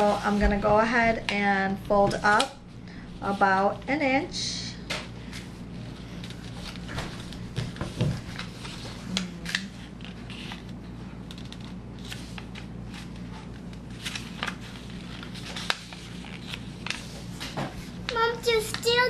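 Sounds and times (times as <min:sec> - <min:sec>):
paper folding and crackling: 0:05.2 - 0:19.0.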